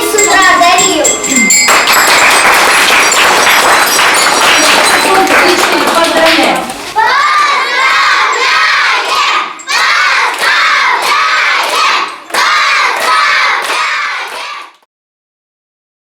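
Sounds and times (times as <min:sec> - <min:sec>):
children shouting a chant: 0:07.0 - 0:14.9.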